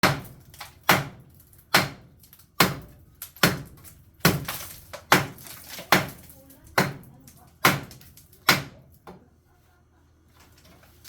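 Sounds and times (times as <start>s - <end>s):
hammer breaking concrete: 0.0s - 8.8s.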